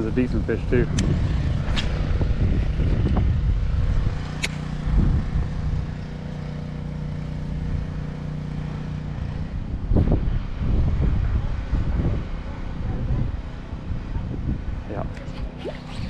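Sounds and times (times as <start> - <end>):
low engine hum: 0.0 - 16.0
wind rumble on microphone: 0.0 - 16.0
sharp click: 0.9 - 1.1, 4.4 - 4.6.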